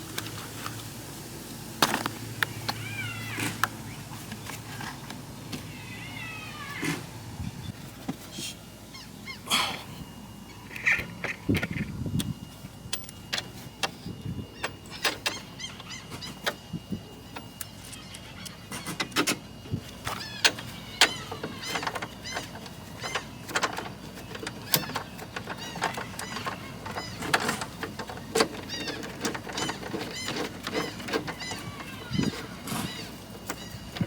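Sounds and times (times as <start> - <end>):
small birds chirping: 8.8 - 9.8, 13.9 - 34.0.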